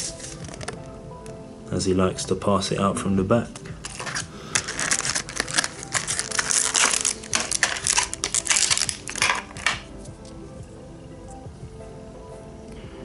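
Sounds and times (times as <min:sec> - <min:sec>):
faint background music: 0:00.0 - 0:13.0
plastic blister pack crackling: 0:03.6 - 0:10.0.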